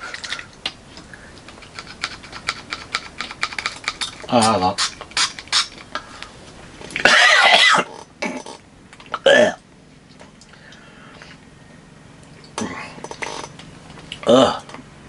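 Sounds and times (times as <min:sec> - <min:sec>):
vocal grunt: 0:09.2 - 0:09.6, 0:14.2 - 0:14.8.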